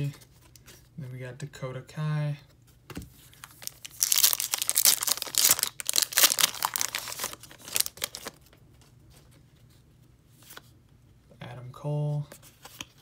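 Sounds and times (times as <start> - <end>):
plastic wrapper crinkling: 3.4 - 8.5.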